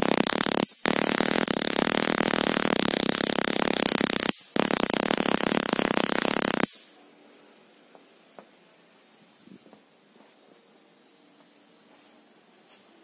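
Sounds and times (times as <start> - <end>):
stun gun crackling buzz: 0.0 - 6.9.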